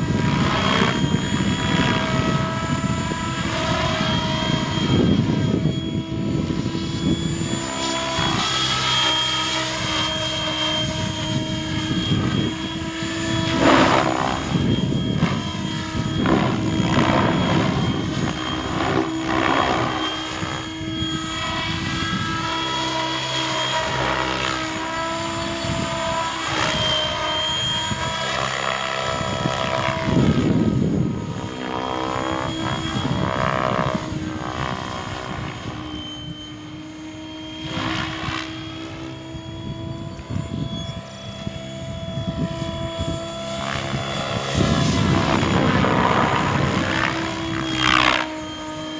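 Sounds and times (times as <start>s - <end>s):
rotor blades whooshing: 0.0s - 28.2s
rc helicopter motor whine: 0.0s - 48.9s.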